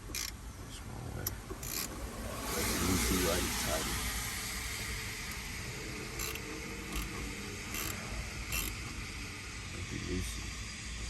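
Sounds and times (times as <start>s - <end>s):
steady low hum: 0.0s - 11.0s
mechanical rasps or clicks: 1.2s - 1.9s, 6.2s - 8.8s.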